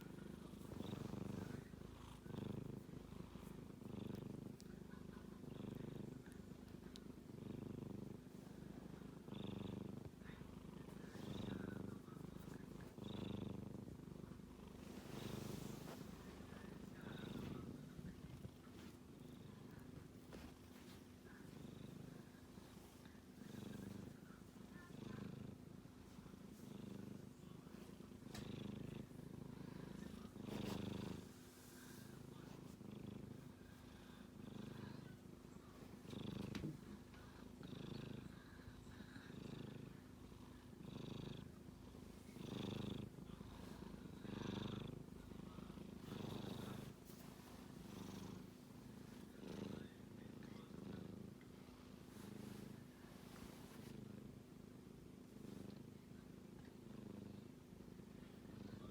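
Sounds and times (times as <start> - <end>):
kitten snoring softly: 0.0 - 58.9.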